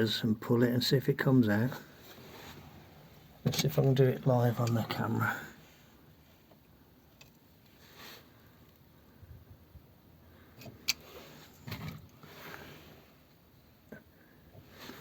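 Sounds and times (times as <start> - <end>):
faint rustling: 1.7 - 6.6.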